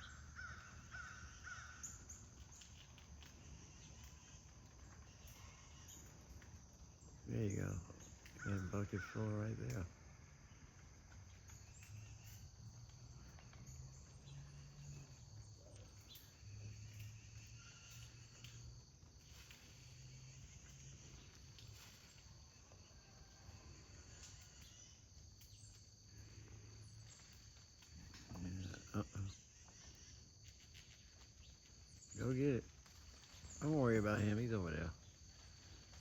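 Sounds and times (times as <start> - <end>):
faint crickets chorus: 0.0 - 36.0.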